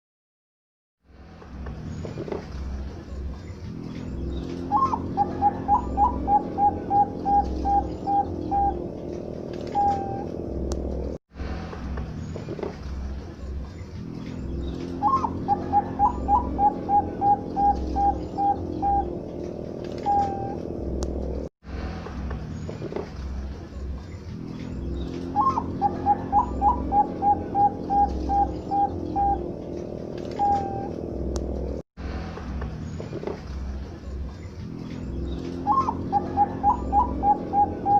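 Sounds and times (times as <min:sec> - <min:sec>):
dove cooing: 0:04.7 - 0:10.3, 0:15.0 - 0:20.6, 0:25.3 - 0:31.0, 0:35.6 - 0:37.9.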